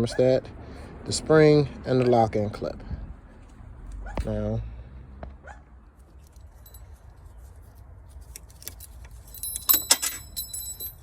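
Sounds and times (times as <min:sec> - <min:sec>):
small metal parts clicking: 0:08.2 - 0:11.0
loud metallic clinking: 0:08.7 - 0:11.0.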